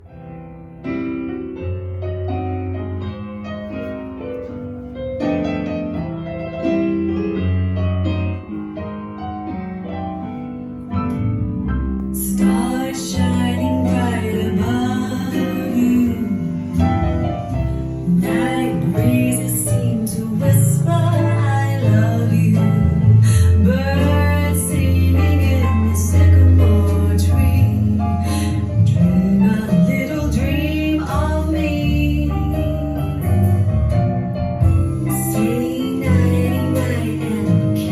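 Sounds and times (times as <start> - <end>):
deep bass: 0.0 - 37.9
piano-like keyboard notes: 0.0 - 37.9
singing voice: 12.1 - 16.9, 18.0 - 33.6, 34.9 - 37.9.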